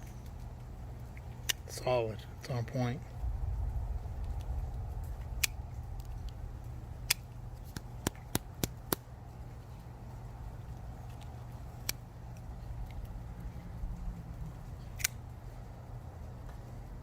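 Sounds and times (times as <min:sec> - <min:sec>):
low hum: 0:00.0 - 0:17.0
folding knife clicks: 0:15.0 - 0:15.2.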